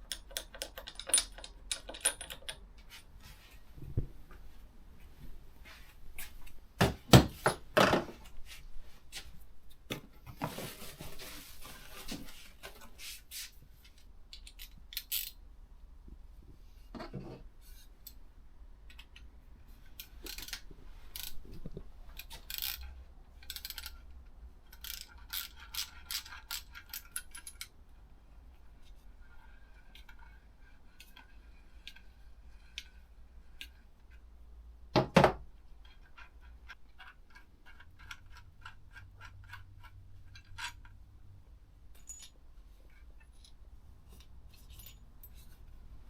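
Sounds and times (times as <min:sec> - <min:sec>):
scraping rustle: 0:10.3 - 0:13.6.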